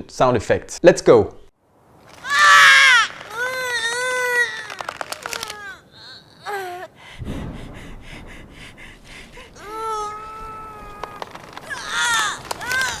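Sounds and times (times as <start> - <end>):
woman whimpering and wailing: 2.4 - 7.0, 9.4 - 13.0
low rumble: 7.0 - 11.8.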